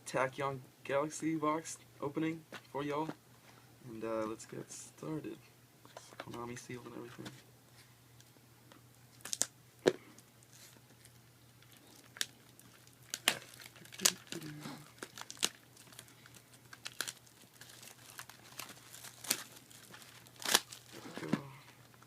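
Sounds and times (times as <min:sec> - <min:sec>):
plastic shrink-wrap crinkling: 0:10.4 - 0:22.0.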